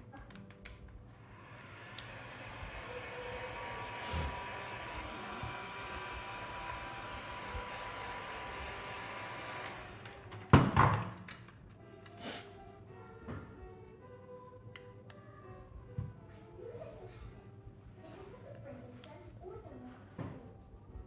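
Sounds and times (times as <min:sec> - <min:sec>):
heat gun blowing hot air: 0:01.2 - 0:10.3.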